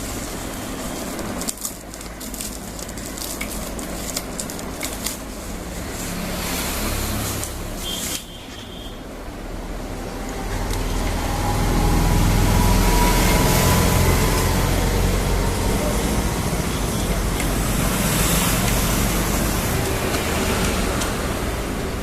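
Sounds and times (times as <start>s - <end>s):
toy crawler motor rumbling: 10.4s - 22.0s.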